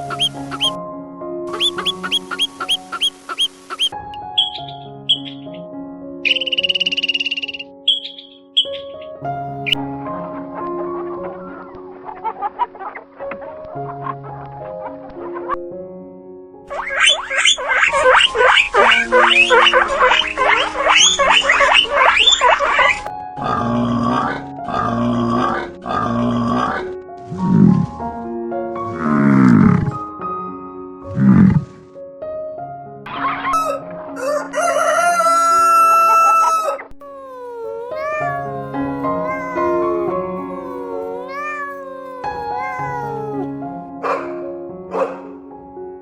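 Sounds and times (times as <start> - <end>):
background music: 0.0 - 46.0
animal high squeals: 16.7 - 23.1, 33.5 - 43.5
rooster crowing: 33.6 - 39.6
cat meowing: 35.8 - 43.6.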